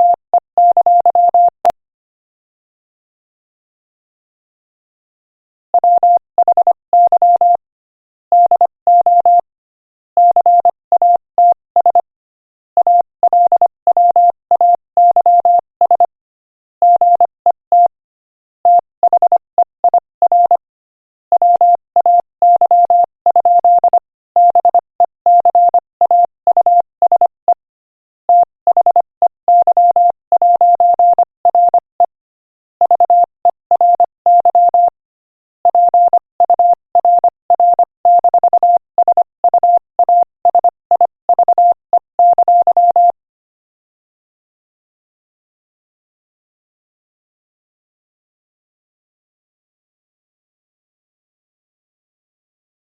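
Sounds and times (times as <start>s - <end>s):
morse code beeps: 0.0s - 1.6s, 5.8s - 7.6s, 8.4s - 9.4s, 10.2s - 12.1s, 12.8s - 16.1s, 16.8s - 17.9s, 18.7s - 20.6s, 21.3s - 27.6s, 28.3s - 32.2s, 32.8s - 35.0s, 35.6s - 43.2s.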